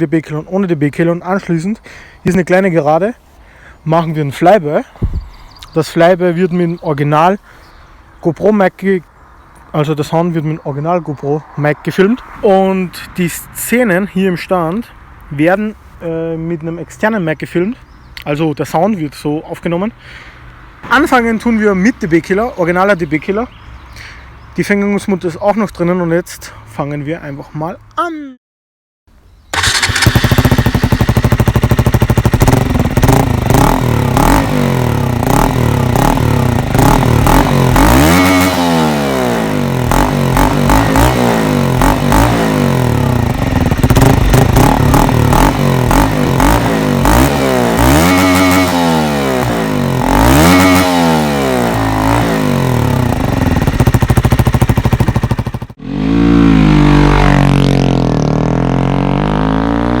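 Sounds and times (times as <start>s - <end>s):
motorcycle engine throttle blips: 29.5s - 59.9s
motorcycle riding past: 29.6s - 60.0s.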